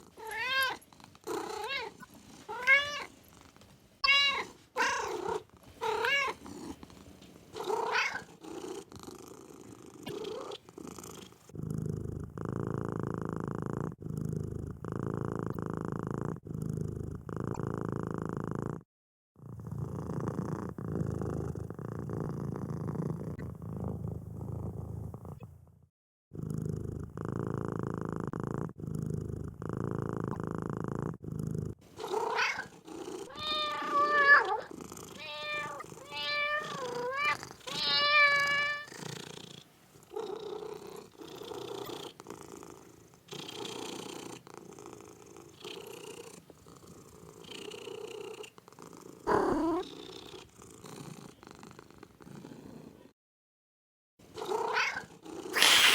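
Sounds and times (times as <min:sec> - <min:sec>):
kitten purring: 0:00.0 - 0:04.0, 0:04.6 - 0:53.2, 0:54.3 - 0:55.9
kitten meowing: 0:55.6 - 0:55.9.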